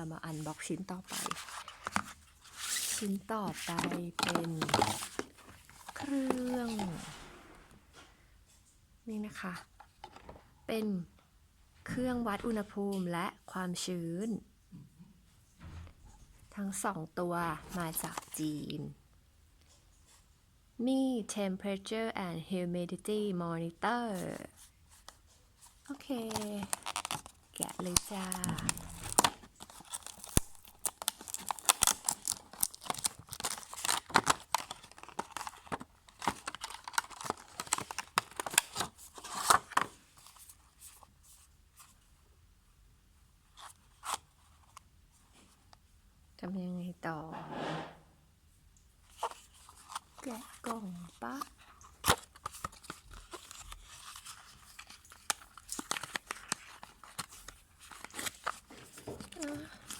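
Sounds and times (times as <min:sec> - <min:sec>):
packaging being torn and crinkled: 0:26.2 - 0:40.5, 0:51.4 - 0:59.9.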